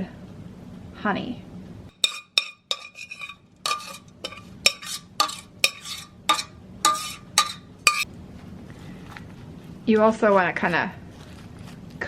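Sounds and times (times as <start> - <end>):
metal spoon scraping metal pot: 1.9 - 8.1.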